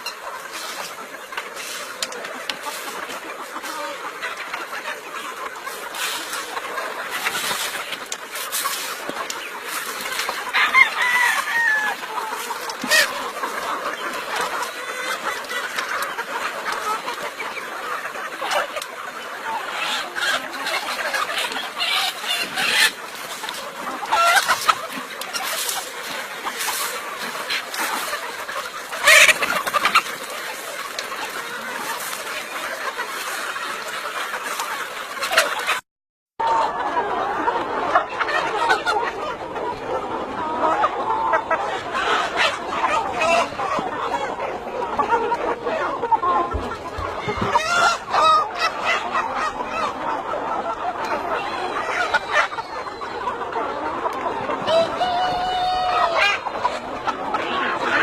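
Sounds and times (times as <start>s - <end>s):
chickens clucking: 0.0s - 35.8s, 36.4s - 58.0s
rooster crowing: 10.6s - 12.0s.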